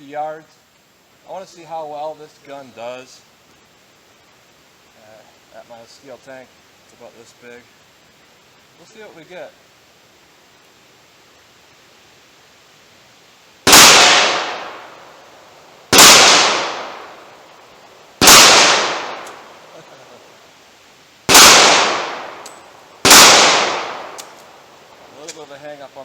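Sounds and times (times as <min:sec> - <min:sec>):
pistol shots: 0:13.7 - 0:15.0, 0:15.9 - 0:17.2, 0:18.2 - 0:19.5, 0:21.3 - 0:24.4.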